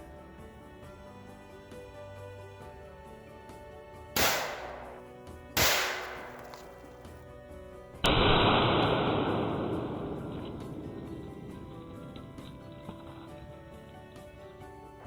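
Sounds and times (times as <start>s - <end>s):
background music: 0.0s - 15.0s
rifle shots: 4.2s - 7.0s, 8.0s - 11.0s.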